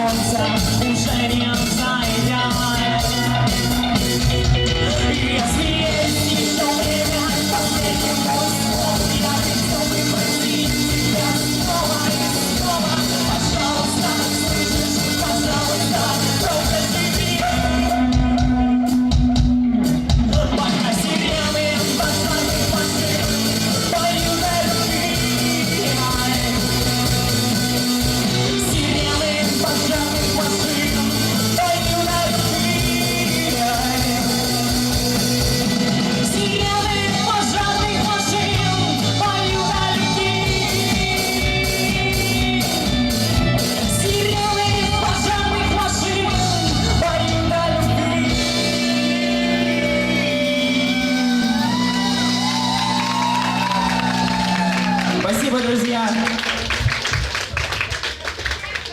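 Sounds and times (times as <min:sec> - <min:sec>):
person singing: 0:00.0 - 0:55.4
rock band playing live: 0:00.0 - 0:57.5.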